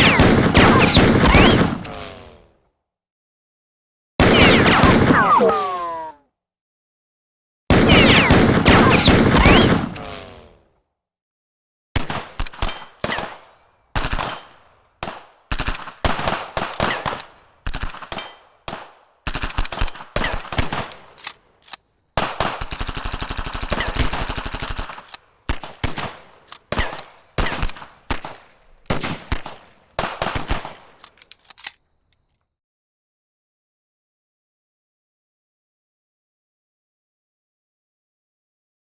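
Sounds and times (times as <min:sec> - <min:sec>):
automatic gunfire bursts: 0:00.0 - 0:02.1, 0:04.2 - 0:05.7, 0:07.7 - 0:10.3.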